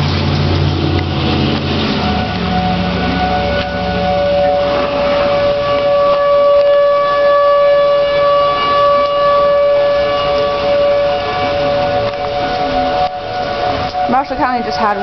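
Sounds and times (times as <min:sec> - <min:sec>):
warning siren wailing: 0:00.0 - 0:15.0.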